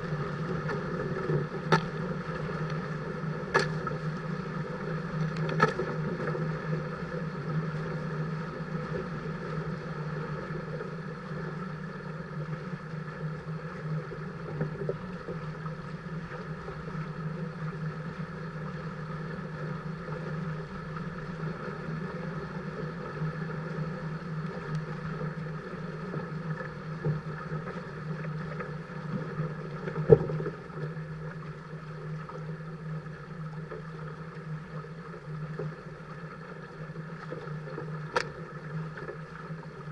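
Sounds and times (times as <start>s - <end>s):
wind and water rushing: 0.0s - 32.4s.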